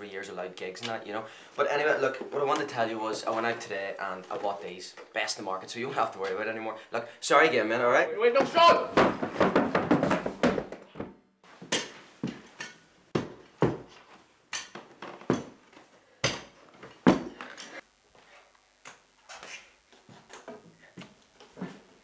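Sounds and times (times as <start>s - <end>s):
hard knocks and clattering thumps: 8.4s - 11.2s, 13.1s - 14.0s.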